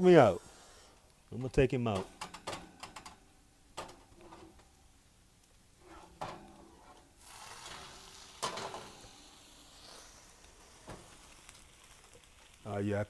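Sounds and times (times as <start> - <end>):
meat sizzling in a hot pan: 7.2 - 13.0.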